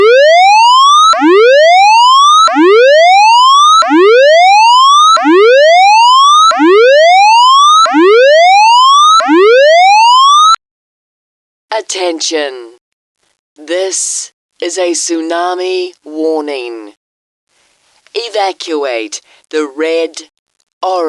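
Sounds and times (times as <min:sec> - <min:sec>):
siren rising whoop: 0:00.0 - 0:10.6.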